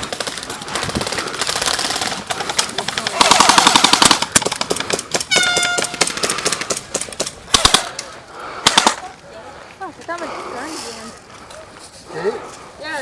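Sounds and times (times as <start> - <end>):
airsoft guns firing: 0.0 - 9.2.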